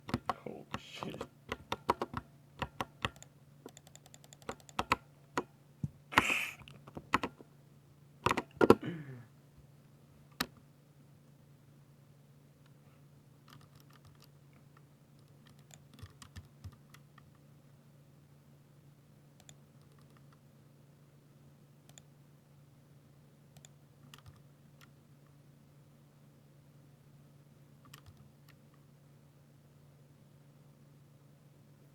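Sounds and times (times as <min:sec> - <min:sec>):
mechanical keyboard typing: 0:00.0 - 0:05.5, 0:06.6 - 0:07.4, 0:08.2 - 0:08.8, 0:13.5 - 0:14.3, 0:15.2 - 0:17.3, 0:19.4 - 0:20.4, 0:23.6 - 0:24.4, 0:27.9 - 0:28.6
low steady hum: 0:00.0 - 0:31.9.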